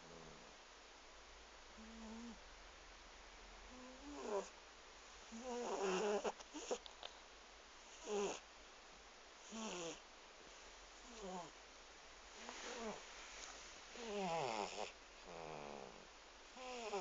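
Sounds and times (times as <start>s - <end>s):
cat snoring: 1.8s - 2.4s, 3.7s - 4.5s, 5.3s - 6.8s, 7.9s - 8.4s, 9.4s - 10.0s, 11.0s - 11.5s, 12.7s - 13.0s, 14.0s - 16.0s, 16.6s - 17.0s.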